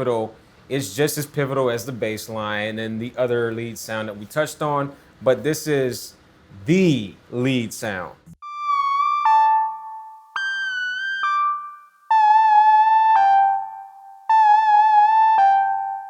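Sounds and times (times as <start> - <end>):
synthesizer lead melody: 8.4 - 16.0.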